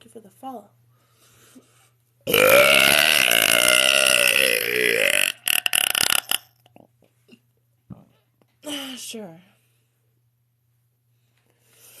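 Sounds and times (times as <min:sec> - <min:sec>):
woman belching: 0:02.3 - 0:06.4.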